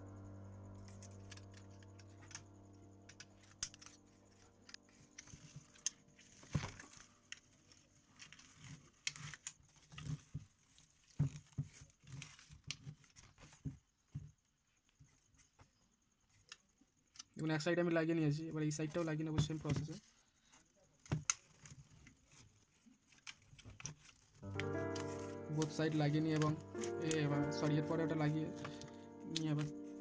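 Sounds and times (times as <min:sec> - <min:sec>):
background music: 0:00.0 - 0:05.3, 0:24.4 - 0:30.0.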